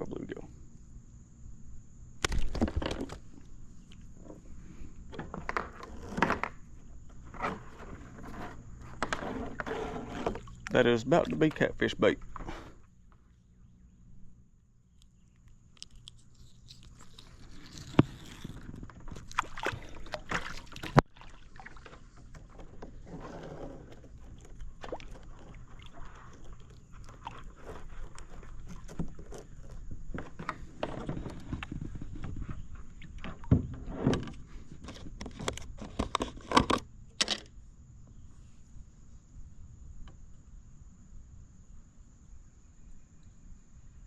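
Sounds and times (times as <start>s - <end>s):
high insect buzz: 0.6s - 21.8s
water sloshing: 5.2s - 13.4s, 15.8s - 35.3s.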